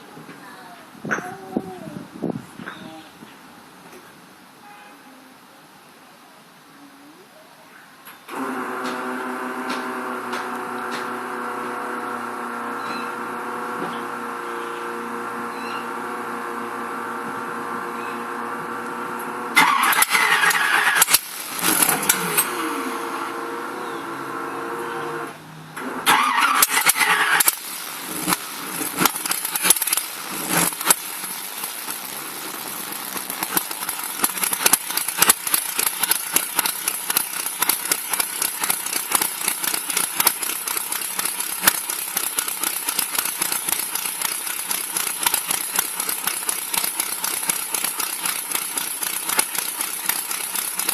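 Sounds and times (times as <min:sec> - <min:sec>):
starter motor whine: 0:08.3 - 0:50.9
boat engine starting and idling: 0:18.7 - 0:23.4, 0:24.1 - 0:50.9.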